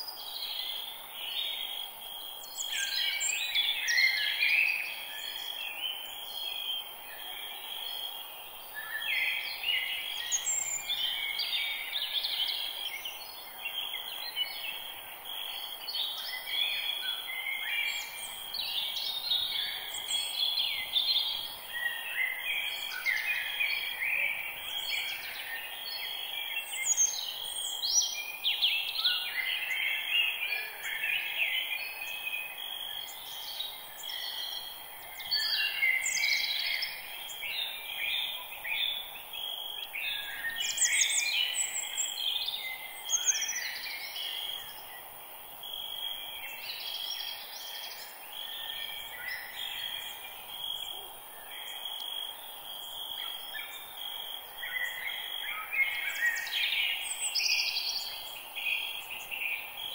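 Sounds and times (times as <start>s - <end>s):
insect drone: 0.0s - 59.9s
birds chirping and singing: 8.8s - 44.8s.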